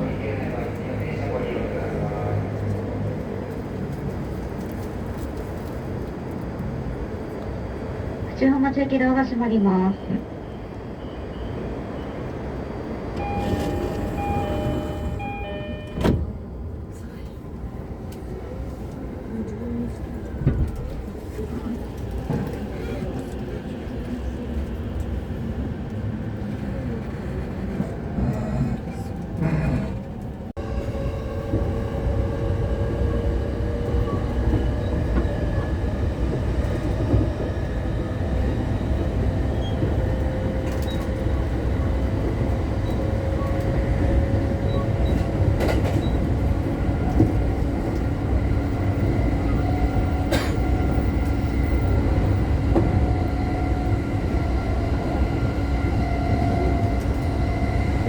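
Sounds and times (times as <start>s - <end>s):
train wheel and track rumble: 0.0s - 58.0s
train motor whine: 13.2s - 16.4s.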